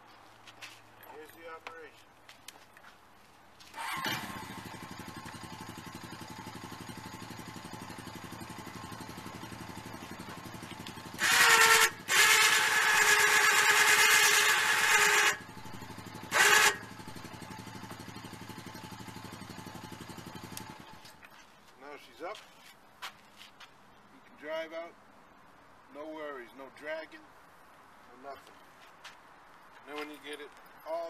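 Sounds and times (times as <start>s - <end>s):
winch winding in cable: 11.2s - 15.4s, 16.3s - 16.8s.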